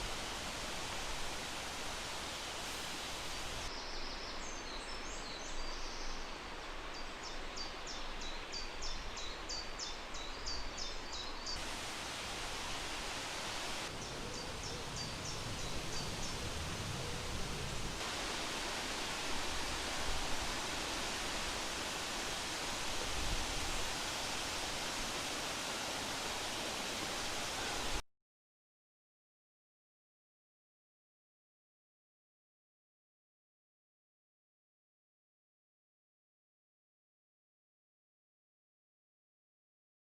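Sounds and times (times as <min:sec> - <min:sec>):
songbird singing: 0:00.0 - 0:17.9
wind hiss: 0:00.0 - 0:28.0.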